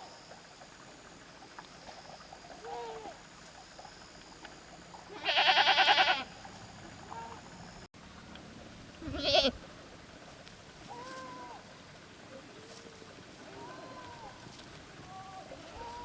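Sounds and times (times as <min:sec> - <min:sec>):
goat bleating: 0:05.1 - 0:06.3, 0:09.0 - 0:09.6.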